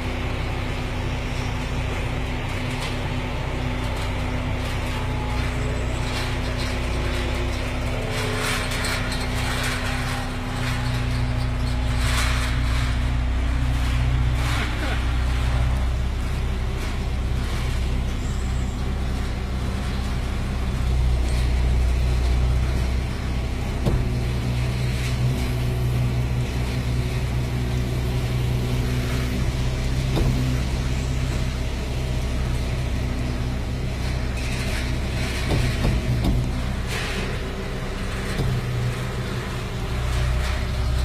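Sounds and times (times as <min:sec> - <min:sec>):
diesel engine running: 0:00.0 - 0:41.0
short knocks: 0:35.4 - 0:36.6.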